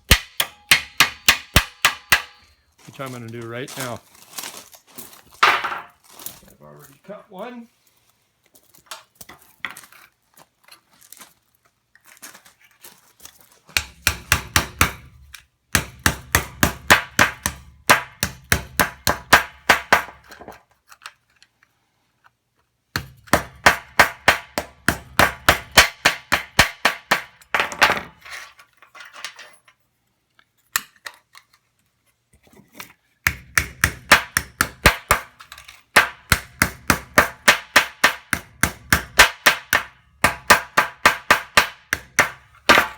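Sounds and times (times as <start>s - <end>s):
hammer striking sheet steel: 0.0s - 2.6s, 13.8s - 15.2s, 15.8s - 20.2s, 23.0s - 27.5s, 33.3s - 35.4s, 36.0s - 42.9s.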